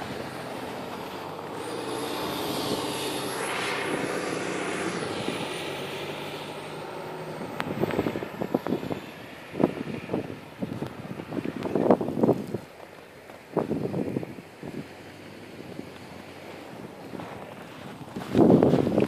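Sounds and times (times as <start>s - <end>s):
high falling whine: 0.0s - 12.0s
motor vehicle passing: 0.0s - 19.0s
footsteps crunching in snow: 15.9s - 19.0s.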